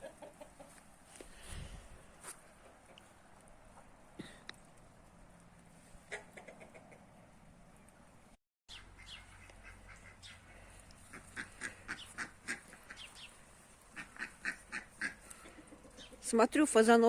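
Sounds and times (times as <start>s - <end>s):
poultry quacking calls: 8.7s - 16.2s.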